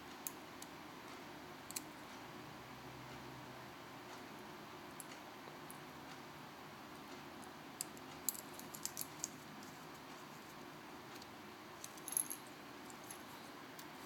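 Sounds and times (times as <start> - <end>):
faint steady hiss: 0.0 - 14.0
small metal tools clicking: 7.8 - 9.4.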